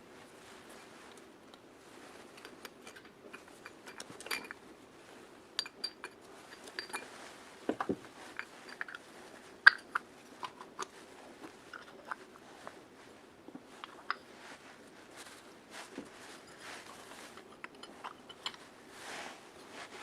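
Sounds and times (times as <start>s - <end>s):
metal parts clicking and clinking: 2.7s - 4.6s, 5.6s - 7.0s.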